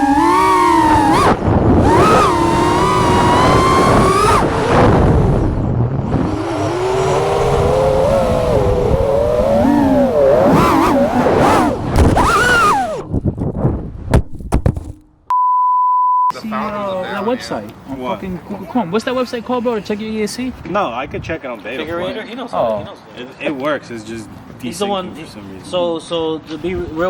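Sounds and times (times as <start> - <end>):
drone motors whining: 0.0 - 13.2.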